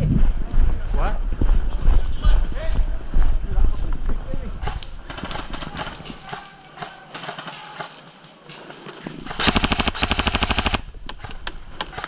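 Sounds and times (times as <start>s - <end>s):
airsoft rifle full-auto burst: 9.3s - 10.9s.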